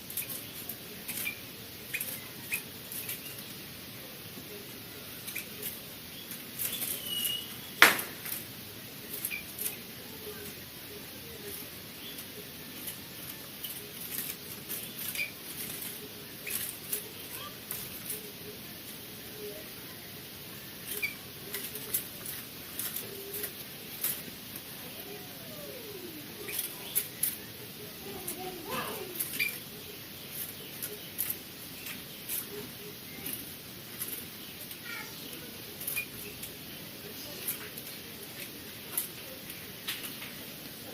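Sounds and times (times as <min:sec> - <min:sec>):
small birds chirping faintly: 0:00.0 - 0:40.9
scratchy clicking and rustling: 0:20.8 - 0:24.7.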